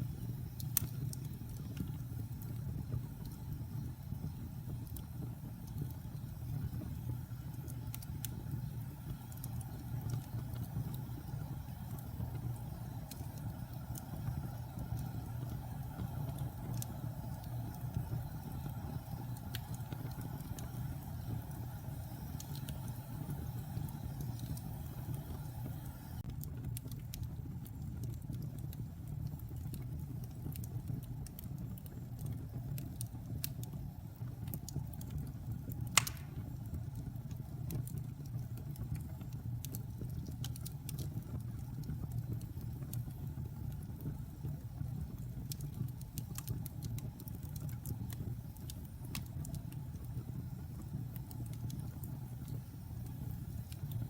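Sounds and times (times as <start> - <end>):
fire roaring: 0.0 - 28.2, 28.8 - 54.0
fire crackling: 0.0 - 54.0
loud pop from fire: 36.0 - 36.6.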